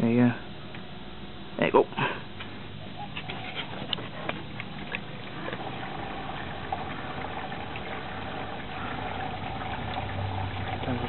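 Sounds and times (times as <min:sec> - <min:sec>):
washing machine hum: 0:01.9 - 0:11.0
water rushing in: 0:05.4 - 0:11.0.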